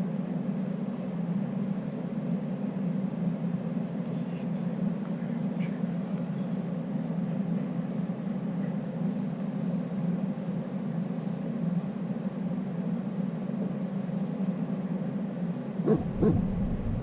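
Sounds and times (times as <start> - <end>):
heater humming: 15.8 - 17.0.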